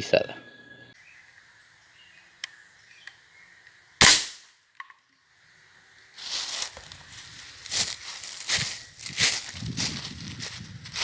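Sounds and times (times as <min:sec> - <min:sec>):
air rifle crack: 0:04.0 - 0:04.5
rustling: 0:06.2 - 0:11.0.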